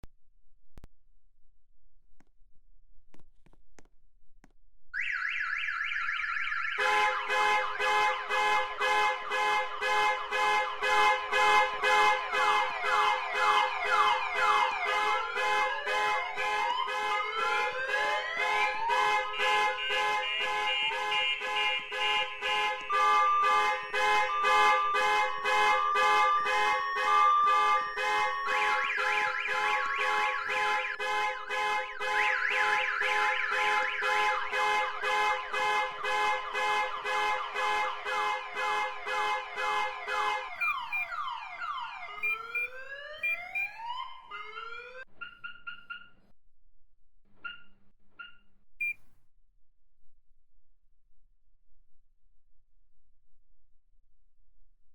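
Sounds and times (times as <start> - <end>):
car alarms sounding: 5.0 - 46.2, 47.5 - 49.2.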